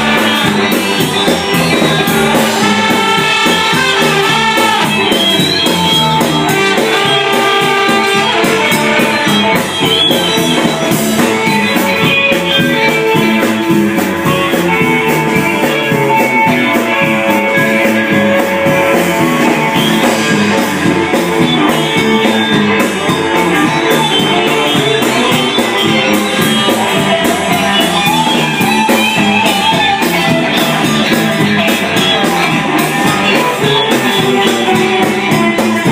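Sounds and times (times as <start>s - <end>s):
instrumental band music with guitar: 0.0s - 35.9s.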